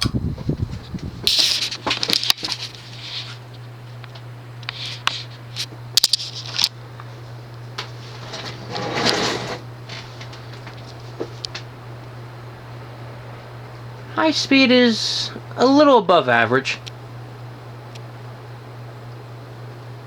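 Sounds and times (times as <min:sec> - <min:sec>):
ceiling fan motor humming: 0:00.0 - 0:20.0.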